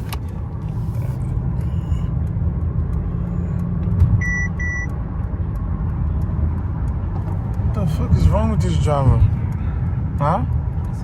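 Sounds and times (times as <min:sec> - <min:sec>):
low road rumble inside car: 0:00.0 - 0:11.0
high-pitched car warning beeps: 0:04.2 - 0:05.0.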